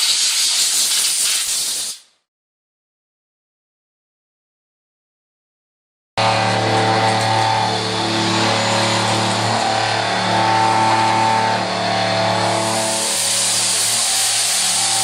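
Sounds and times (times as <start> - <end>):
machinery hum with whining tones: 6.2 - 15.0.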